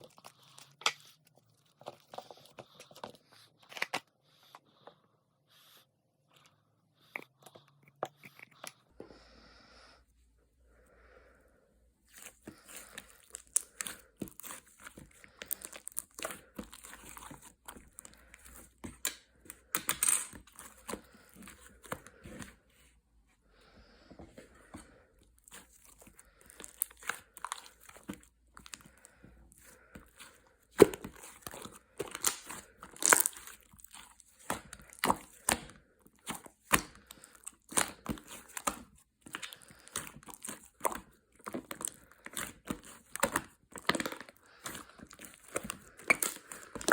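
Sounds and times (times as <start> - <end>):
crinkling and crackling: 12.1 - 22.7, 24.2 - 46.9.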